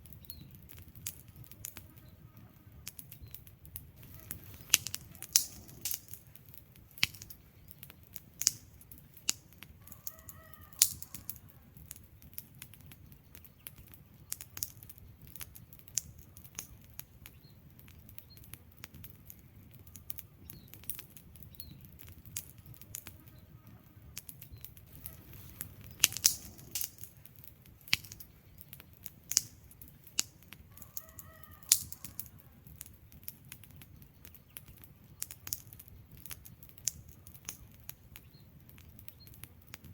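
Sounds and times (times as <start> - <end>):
low rumble of flames: 0.0 - 39.9
wood fire crackling and popping: 0.0 - 39.9.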